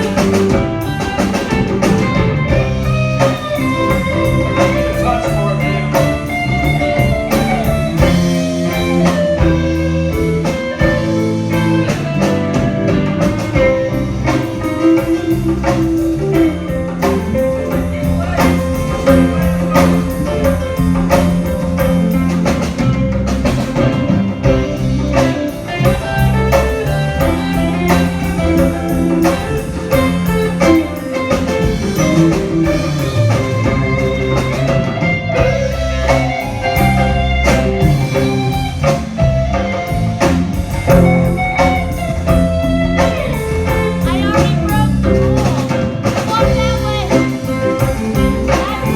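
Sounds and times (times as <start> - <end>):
bass guitar: 0.0 - 48.9
drum kit beat: 0.0 - 48.9
electric guitar: 0.0 - 48.9.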